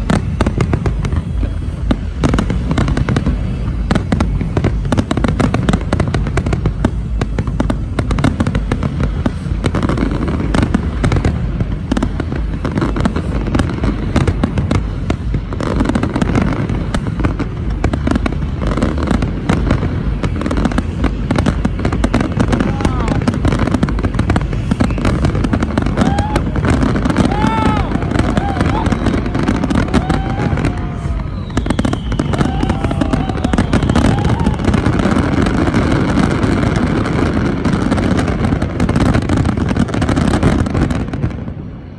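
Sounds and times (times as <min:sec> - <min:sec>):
fireworks bangs and crackles: 0:00.0 - 0:41.9.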